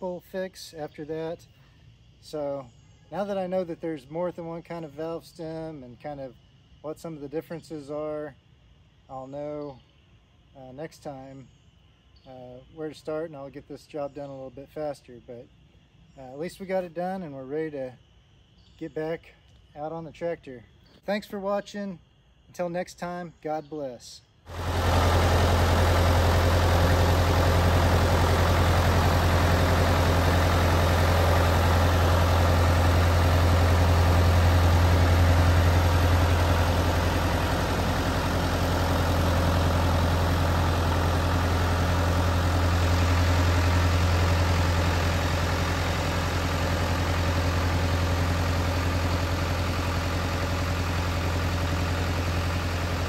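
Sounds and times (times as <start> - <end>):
tractor engine idling: 24.5 - 53.0.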